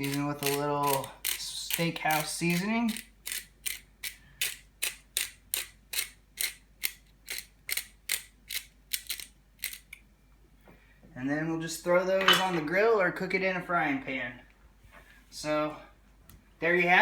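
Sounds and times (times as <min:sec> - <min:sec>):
spice grinder grinding: 0:00.0 - 0:10.0.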